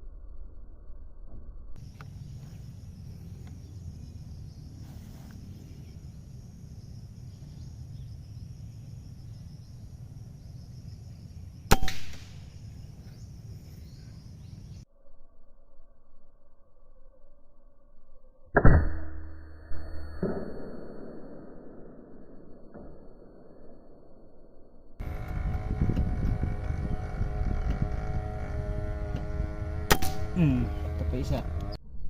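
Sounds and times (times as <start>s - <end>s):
low outdoor rumble: 0.0s - 14.9s, 25.0s - 32.0s
air rifle shot: 11.7s - 12.4s, 29.9s - 30.2s.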